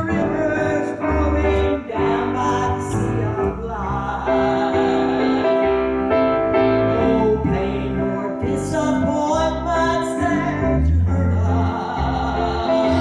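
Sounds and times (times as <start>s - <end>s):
woman singing gospel song: 0.0s - 5.8s, 11.3s - 13.0s
piano accompaniment: 0.0s - 13.0s.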